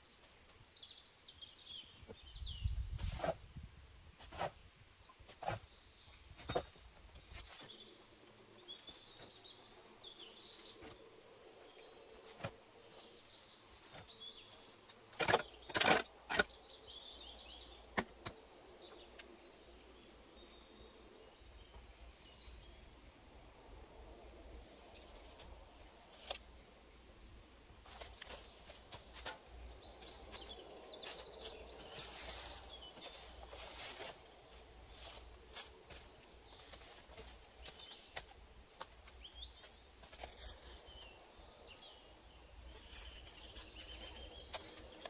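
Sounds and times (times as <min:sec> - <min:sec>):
small birds chirping: 0:00.0 - 0:45.0
handling and scraping noises: 0:02.9 - 0:16.7, 0:24.7 - 0:26.7, 0:27.6 - 0:45.0.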